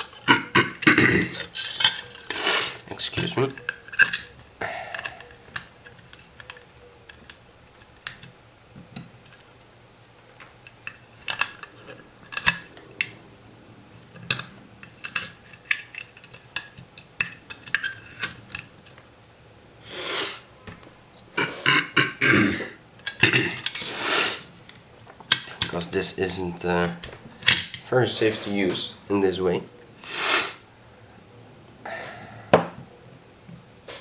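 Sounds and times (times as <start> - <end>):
small parts and tools clicking: 0.0 - 13.3, 14.1 - 19.1, 23.0 - 26.0
person coughing: 0.3 - 1.4, 21.4 - 23.6.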